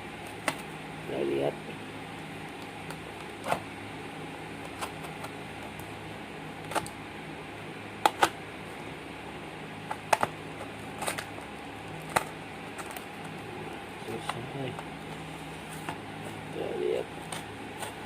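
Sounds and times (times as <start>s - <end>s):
steady low hum: 0.0s - 18.0s
packaging clicks and crinkles: 9.9s - 13.5s.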